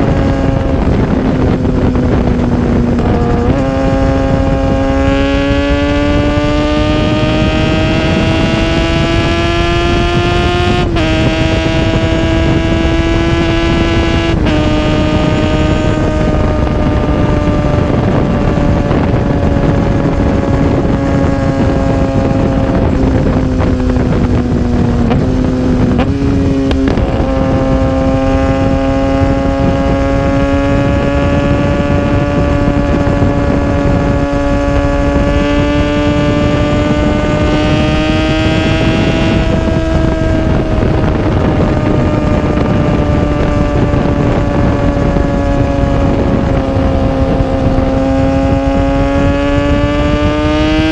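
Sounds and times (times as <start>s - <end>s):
motorcycle engine running: 0.0s - 50.9s
wind noise on microphone: 0.0s - 50.9s.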